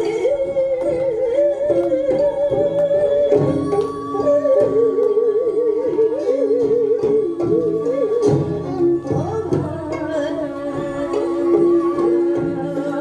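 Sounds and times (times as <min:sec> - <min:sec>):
drum strokes: 0:00.0 - 0:13.0.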